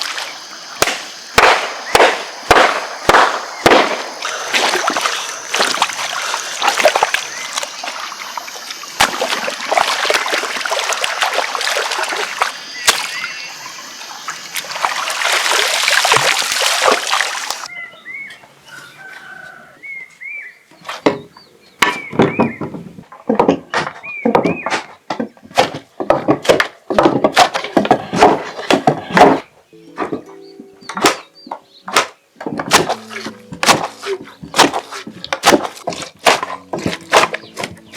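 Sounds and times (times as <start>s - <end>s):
water splashing and sloshing: 0.0s - 0.6s, 3.7s - 17.7s, 32.0s - 37.9s
sharp knocks: 30.9s - 37.8s.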